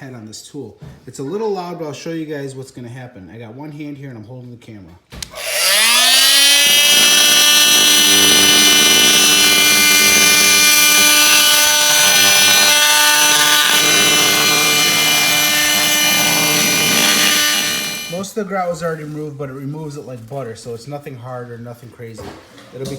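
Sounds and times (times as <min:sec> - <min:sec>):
multi-tool grinding grout: 0:05.3 - 0:18.2.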